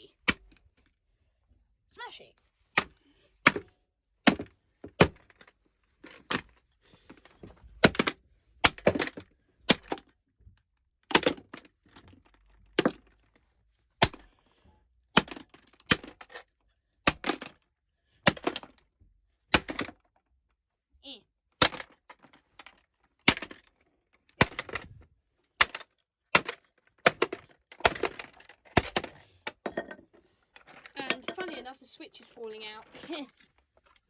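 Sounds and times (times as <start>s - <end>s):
hammer striking plastic casing: 2.8s - 3.7s, 4.3s - 5.5s, 7.2s - 10.1s, 11.1s - 11.7s, 12.8s - 13.1s, 14.0s - 14.3s, 15.2s - 16.4s, 17.1s - 17.6s, 18.2s - 18.8s, 19.5s - 20.1s, 21.6s - 23.7s, 24.4s - 25.0s, 25.6s - 29.9s.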